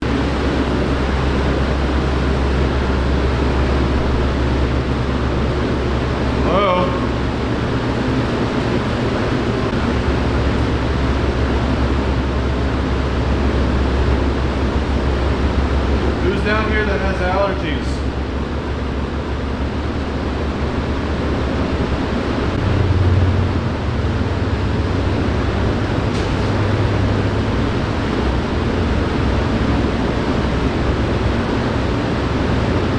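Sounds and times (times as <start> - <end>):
refrigeration machinery humming: 0.0 - 32.9.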